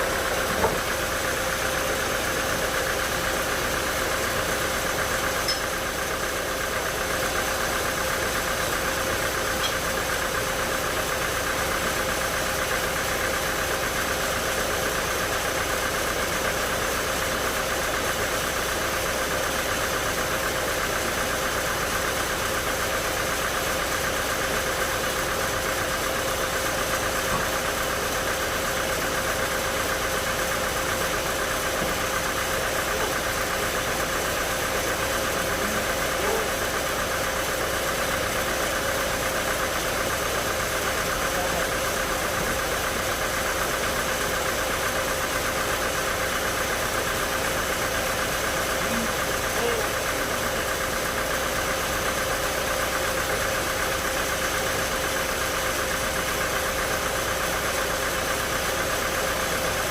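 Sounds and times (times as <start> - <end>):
sawmill machinery humming and whining: 0.0 - 16.9.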